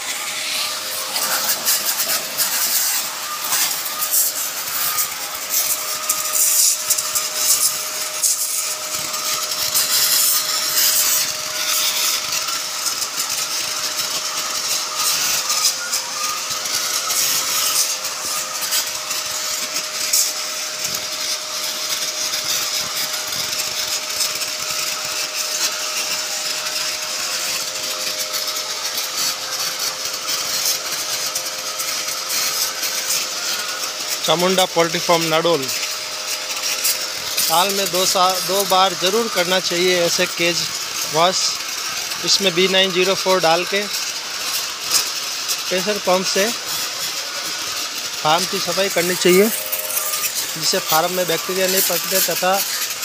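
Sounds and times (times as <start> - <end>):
high-pressure water spray hissing: 0.0 - 53.0
pressure pump motor humming: 0.0 - 53.0.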